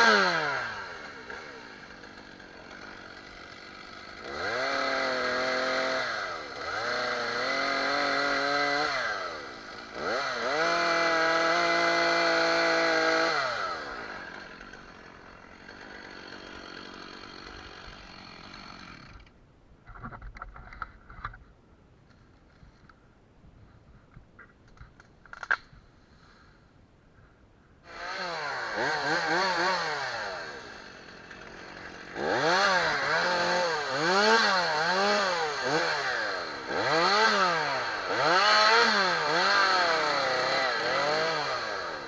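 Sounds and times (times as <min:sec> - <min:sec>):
chainsaw idling and revving: 0:00.0 - 0:19.3, 0:27.8 - 0:42.0.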